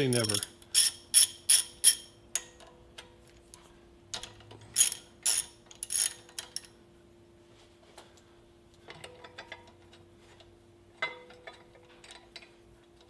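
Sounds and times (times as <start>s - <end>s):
metallic clicks and clanks: 0.0s - 3.2s, 4.1s - 6.8s, 8.8s - 13.0s
faint steady hum: 0.0s - 13.0s.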